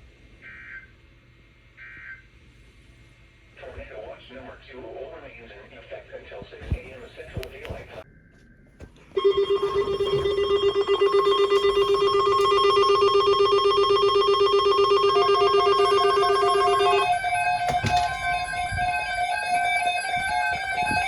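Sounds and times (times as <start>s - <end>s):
electronic two-pitch ringing tone: 9.2s - 21.0s
synthesized melody: 9.2s - 21.0s.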